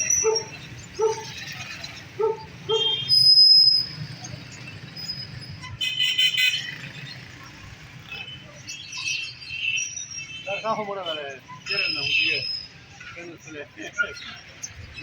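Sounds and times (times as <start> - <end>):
puppy yipping: 0.0 - 1.4, 2.2 - 3.6
high chirping: 0.0 - 5.6.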